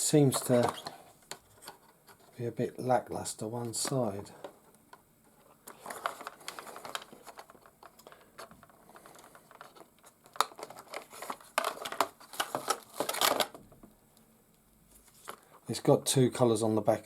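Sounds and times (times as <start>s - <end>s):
hard plastic clicking and crinkling: 0.1s - 2.4s, 3.6s - 15.6s.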